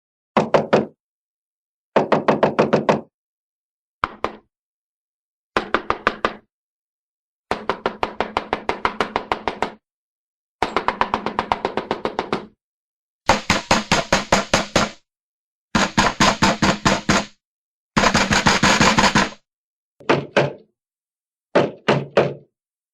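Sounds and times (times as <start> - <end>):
cartoon knocking on a door: 0.4 - 1.0, 2.0 - 3.1, 7.5 - 9.8, 15.8 - 17.4, 20.0 - 20.7, 21.5 - 22.5.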